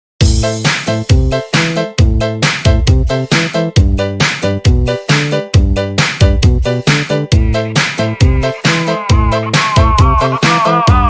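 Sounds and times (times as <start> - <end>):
electronic dance music: 0.2 - 11.0.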